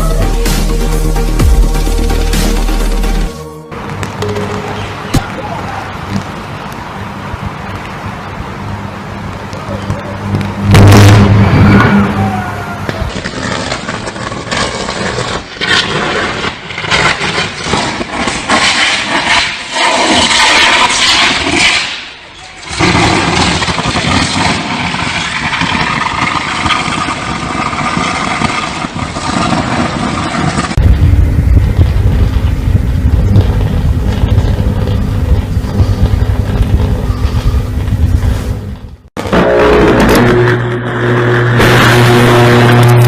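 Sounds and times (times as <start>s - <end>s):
electrical arcing crackling: 10.2s - 43.0s.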